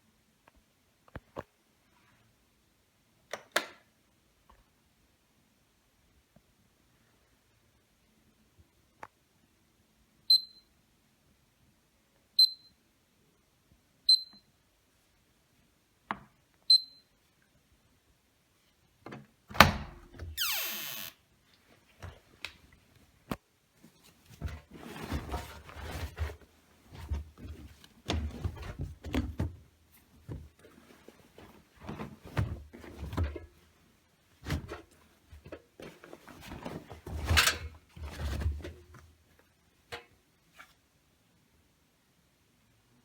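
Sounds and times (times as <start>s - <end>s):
washing machine thudding and rustling: 24.3s - 33.7s, 34.4s - 39.0s.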